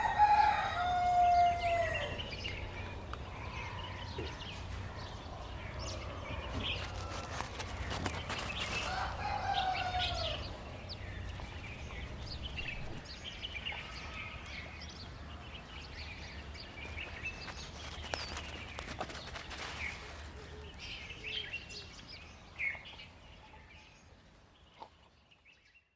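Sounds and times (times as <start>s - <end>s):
rooster crowing: 0.0s - 2.7s, 8.6s - 13.0s.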